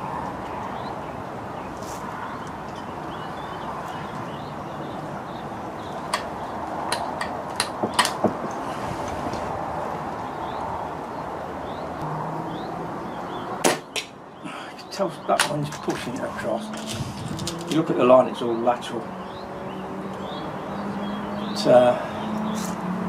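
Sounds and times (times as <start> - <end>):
sharp clicks: 6.9 - 8.3
wind on microphone: 7.6 - 10.1, 16.8 - 17.7.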